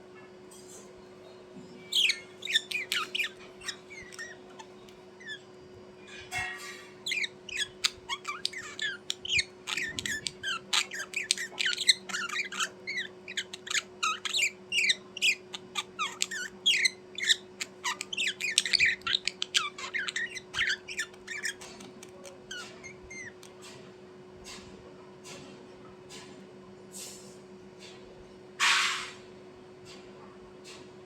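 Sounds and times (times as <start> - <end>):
small birds chirping: 1.0 - 5.5, 6.8 - 23.8.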